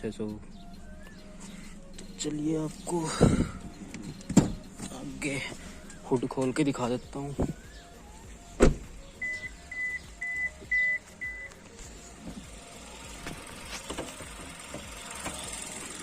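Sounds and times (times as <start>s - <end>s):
car warning chime beeping: 0.0s - 16.0s
faint car engine idling: 0.0s - 16.0s
car door thump: 3.1s - 3.6s, 4.2s - 4.7s, 7.3s - 7.7s, 8.6s - 9.0s.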